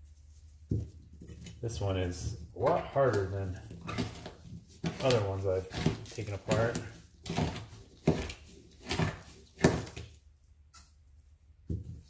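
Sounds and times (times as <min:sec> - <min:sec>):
blade scraping hard casing: 0:01.2 - 0:10.2.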